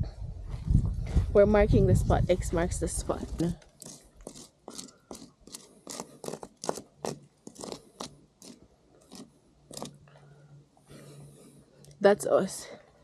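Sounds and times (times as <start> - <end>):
stone scratching tree bark: 3.0 - 10.0.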